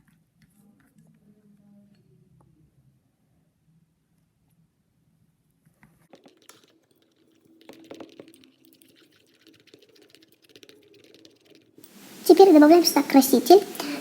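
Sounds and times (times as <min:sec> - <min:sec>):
spoon stirring thick mixture: 0:06.1 - 0:12.8.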